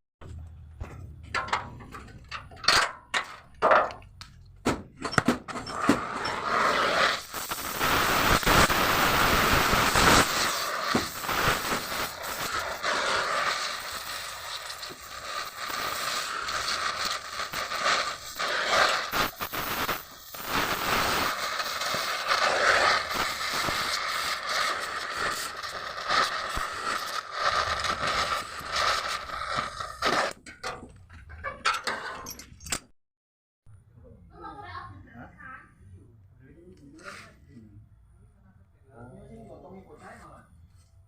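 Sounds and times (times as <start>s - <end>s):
rough scraping and grinding metal: 5.1s - 7.6s, 26.9s - 32.8s.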